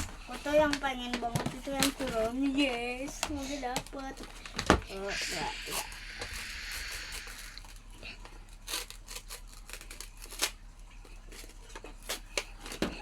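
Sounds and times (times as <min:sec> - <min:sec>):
packaging tearing and crinkling: 0:03.9 - 0:12.9.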